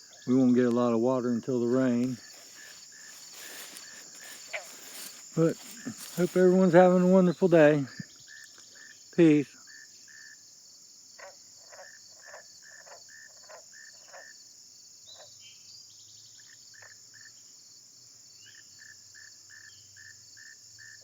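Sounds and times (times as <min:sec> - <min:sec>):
insects trilling: 0:00.0 - 0:21.0.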